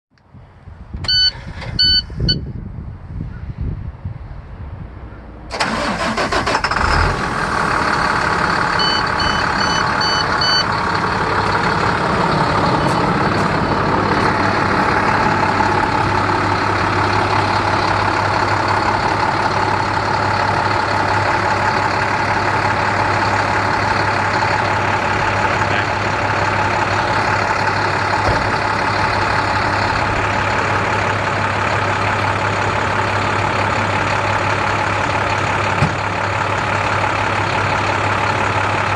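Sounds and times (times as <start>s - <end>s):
short high beeps: 1.1s - 2.4s, 8.8s - 10.7s
diesel truck engine idling: 5.5s - 38.9s.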